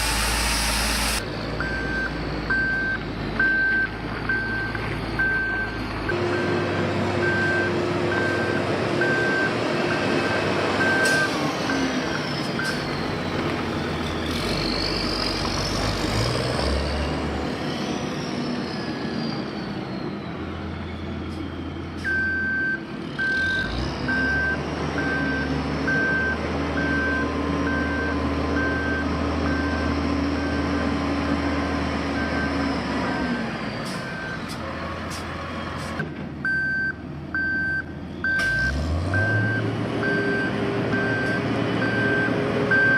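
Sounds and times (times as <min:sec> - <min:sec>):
reversing alarm beeping: 0:00.0 - 0:12.9, 0:18.8 - 0:30.8, 0:36.4 - 0:42.9
heavy machinery engines running: 0:00.0 - 0:42.9.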